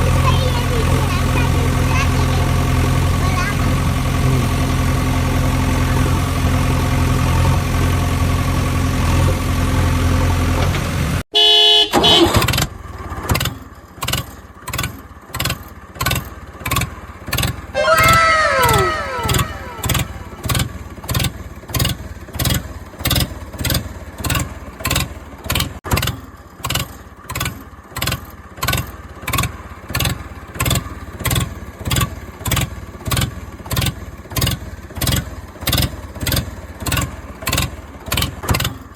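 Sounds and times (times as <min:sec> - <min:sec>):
engine-like hum: 0:00.0 - 0:11.2, 0:12.2 - 0:38.9
falling whistle tones: 0:17.8 - 0:20.5
horn blast: 0:17.8 - 0:20.5.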